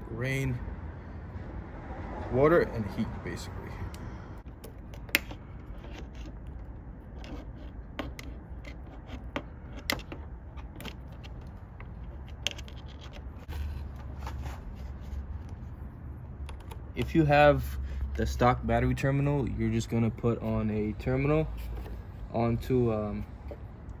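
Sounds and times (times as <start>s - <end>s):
tape scraping and rustling: 4.4s - 16.6s.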